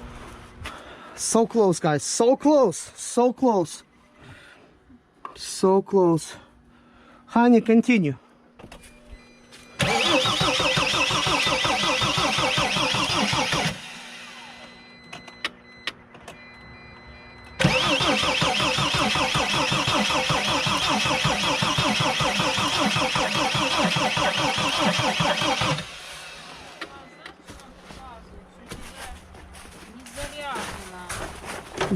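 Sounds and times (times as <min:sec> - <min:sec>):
diesel engine cranking: 0:09.8 - 0:16.4, 0:17.6 - 0:27.0.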